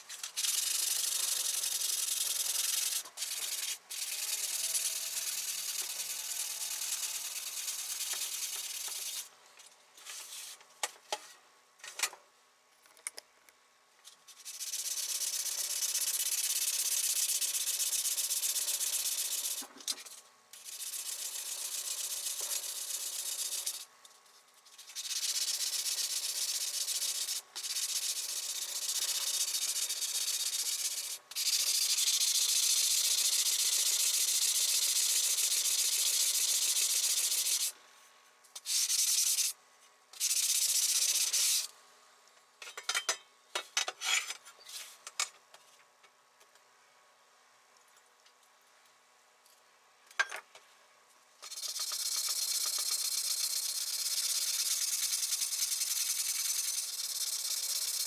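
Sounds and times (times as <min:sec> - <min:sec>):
sandpaper rubbing: 0:00.2 - 0:09.3.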